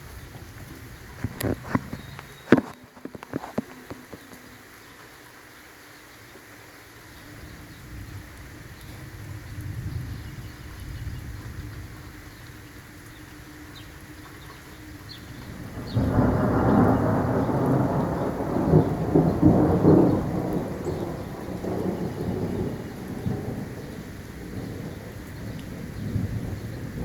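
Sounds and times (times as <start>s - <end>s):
steady rain: 0.0s - 27.0s
thunder rumbling and cracking: 7.4s - 12.8s, 14.5s - 27.0s.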